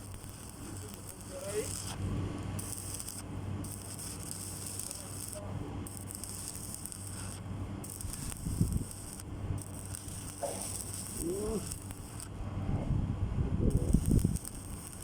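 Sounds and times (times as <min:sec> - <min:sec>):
welding arc crackling hiss: 0:00.0 - 0:12.3, 0:13.7 - 0:15.0.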